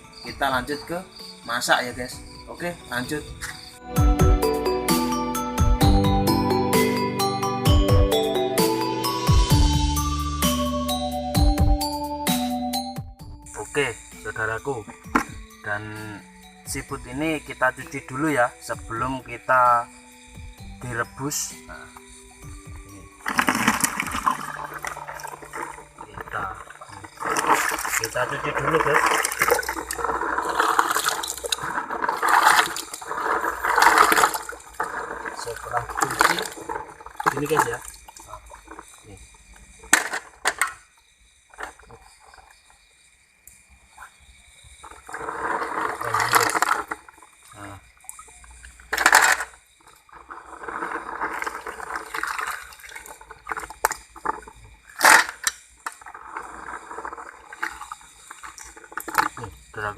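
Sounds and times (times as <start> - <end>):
water sloshing and splashing: 20.7 - 40.7, 44.8 - 59.6
snail shells knocking: 20.8 - 39.0.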